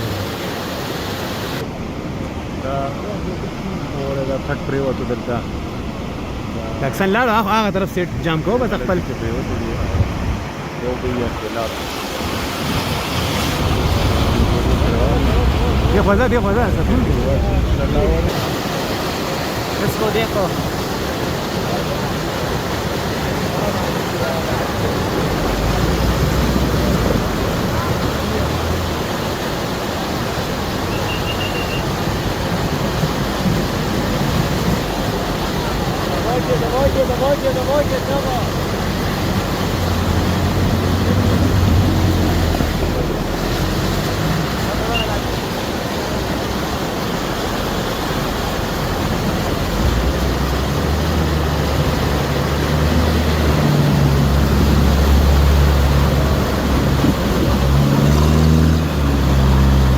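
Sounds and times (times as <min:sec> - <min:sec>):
floodwater roaring: 0:00.0 - 0:59.9
vehicle engine hum: 0:12.7 - 0:18.3, 0:24.7 - 0:59.9.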